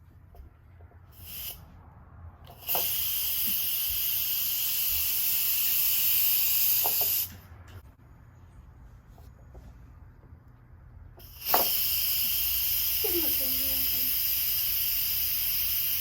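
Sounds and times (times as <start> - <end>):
pressure cooker steam hissing: 1.1 - 1.6, 2.5 - 7.3, 11.2 - 16.0.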